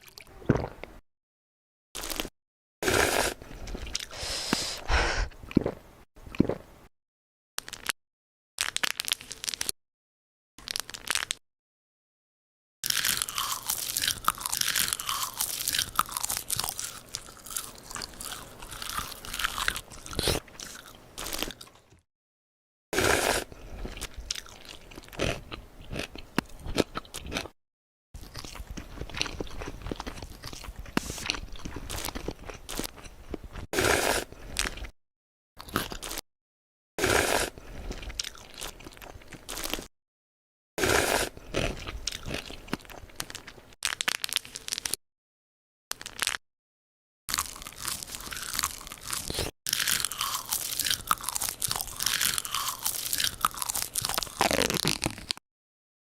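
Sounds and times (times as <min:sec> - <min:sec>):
crunching and chewing food: 0:02.0 - 0:06.9, 0:07.6 - 0:08.0, 0:08.6 - 0:09.8, 0:10.6 - 0:11.4, 0:12.8 - 0:22.0, 0:23.0 - 0:27.6, 0:28.2 - 0:35.0, 0:35.6 - 0:36.2, 0:37.0 - 0:39.9, 0:40.8 - 0:45.0, 0:45.9 - 0:46.4, 0:47.3 - 0:55.4.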